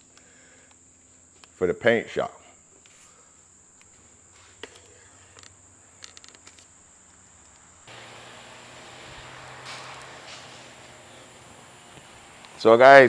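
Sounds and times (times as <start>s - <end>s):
faint clicks: 7.4s - 13.0s
electric fan whooshing and humming: 7.9s - 13.0s.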